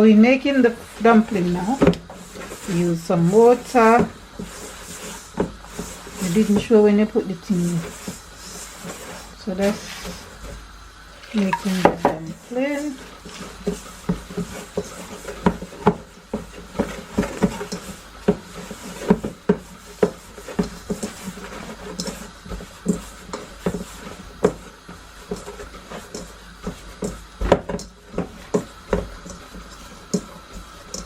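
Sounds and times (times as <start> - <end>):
dough rubbing: 0.0 - 31.0
dough thudding against a bowl: 26.1 - 29.4.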